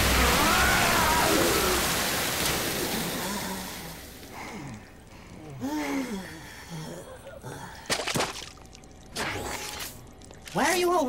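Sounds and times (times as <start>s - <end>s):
cartoon fire hose water gushing: 0.0s - 3.8s.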